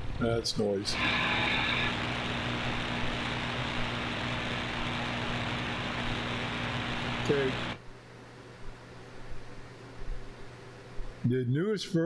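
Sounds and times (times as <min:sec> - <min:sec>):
radio static hiss: 0:00.0 - 0:07.8
low steady hum: 0:00.0 - 0:08.1.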